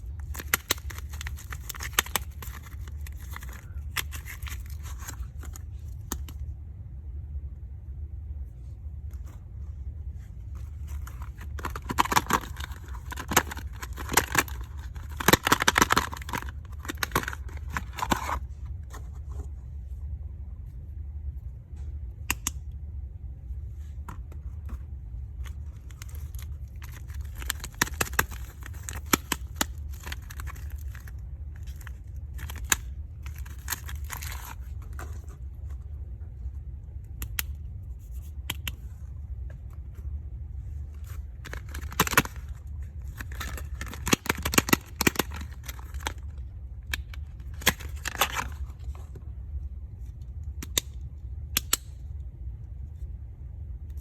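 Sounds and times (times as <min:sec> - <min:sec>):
plastic wrapping crinkling: 0:00.0 - 0:05.6, 0:10.6 - 0:18.4, 0:25.5 - 0:35.0
low hum: 0:00.0 - 0:44.1.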